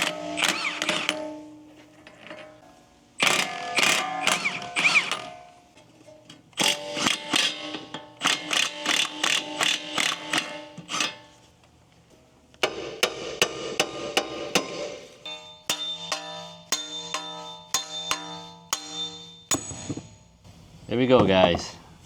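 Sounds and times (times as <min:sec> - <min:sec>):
hammer striking metal rotor: 0:12.6 - 0:20.5.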